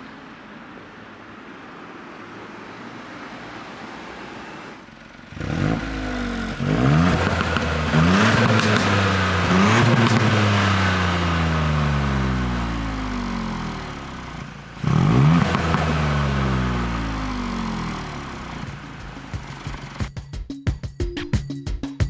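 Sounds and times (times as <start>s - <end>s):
car engine accelerating: 0.0s - 20.1s.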